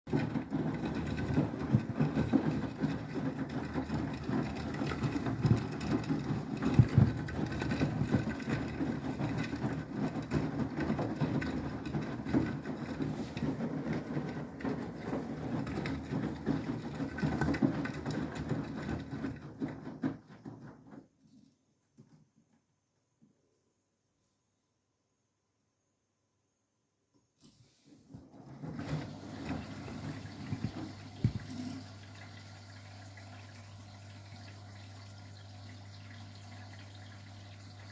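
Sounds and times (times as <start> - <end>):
washing machine churning rumble: 0.1 - 20.7, 28.1 - 37.9
laundry thumping in drum: 0.1 - 21.0, 28.2 - 31.8.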